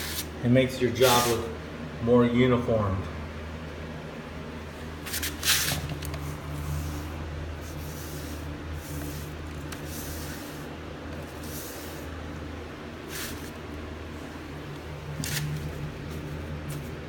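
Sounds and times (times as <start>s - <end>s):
steady low hum: 0.0s - 17.0s
paintbrush swishing on wood: 6.6s - 10.7s.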